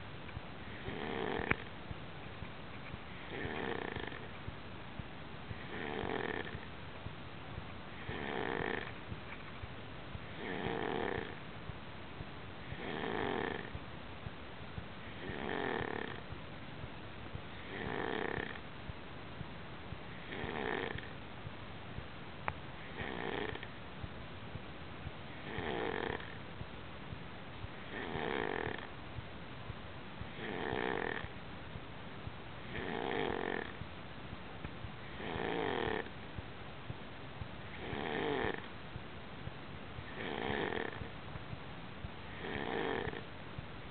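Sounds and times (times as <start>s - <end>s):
steady background hiss: 0.0s - 43.9s
person snoring: 0.7s - 1.7s, 3.3s - 4.3s, 5.6s - 6.7s, 8.0s - 8.9s, 10.4s - 11.4s, 12.7s - 13.7s, 15.2s - 16.2s, 17.6s - 18.6s, 20.2s - 21.1s, 22.9s - 23.6s, 25.4s - 26.4s, 27.9s - 28.9s, 30.4s - 31.3s, 32.7s - 33.7s, 35.1s - 36.1s, 37.8s - 38.6s, 40.1s - 41.1s, 42.3s - 43.2s.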